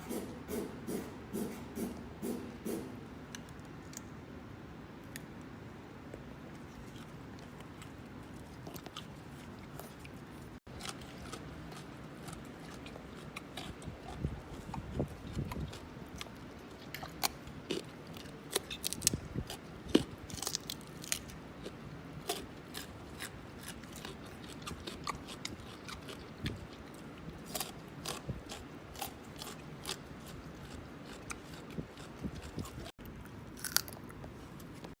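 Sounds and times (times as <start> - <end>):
chimpanzees crunching carrots: 6.4 - 35.0
steady chewing: 6.5 - 35.0.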